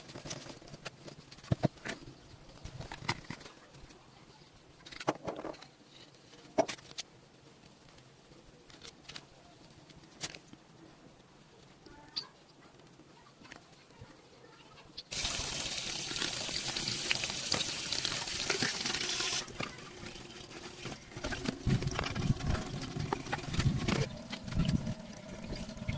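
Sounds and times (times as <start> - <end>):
water gushing: 15.1 - 25.9.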